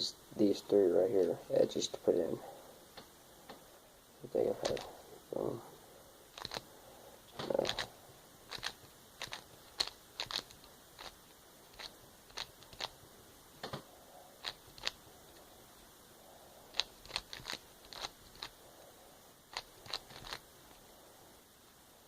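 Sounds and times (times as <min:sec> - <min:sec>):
puzzle cube plastic clicks: 0:04.6 - 0:04.9, 0:06.3 - 0:06.6, 0:07.4 - 0:07.9, 0:08.5 - 0:13.0, 0:16.7 - 0:18.6, 0:19.5 - 0:20.4.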